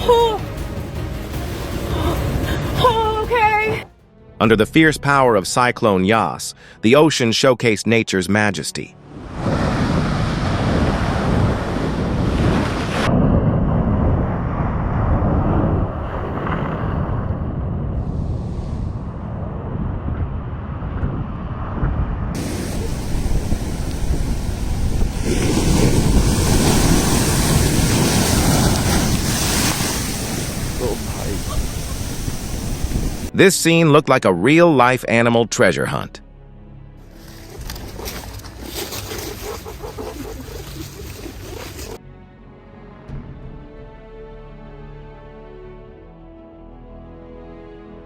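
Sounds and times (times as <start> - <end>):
heavy surf: 9.1 - 20.6, 22.4 - 33.3, 37.2 - 42.0
wind buffeting microphone: 9.4 - 33.3.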